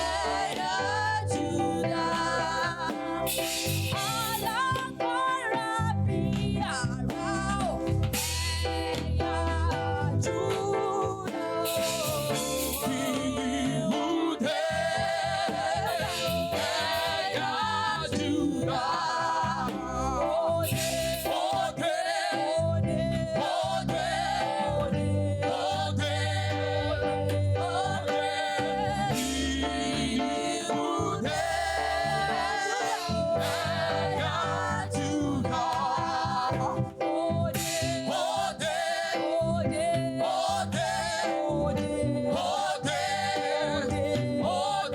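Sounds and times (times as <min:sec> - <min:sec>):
bass guitar: 0:00.0 - 0:21.9, 0:22.5 - 0:38.7, 0:39.4 - 0:44.9
choir singing gospel song: 0:00.0 - 0:44.9
drums: 0:02.7 - 0:05.0, 0:06.3 - 0:13.9, 0:20.6 - 0:21.7, 0:37.6 - 0:38.2.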